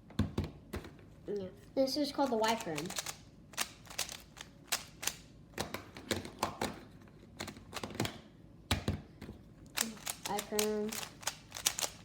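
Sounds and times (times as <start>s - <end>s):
puzzle cube plastic clicks: 2.2s - 6.8s, 9.7s - 12.0s.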